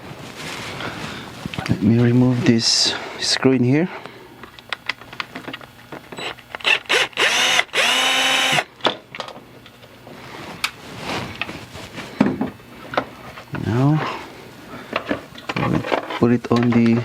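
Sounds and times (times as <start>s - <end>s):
electric screwdriver whirring: 6.2s - 8.7s.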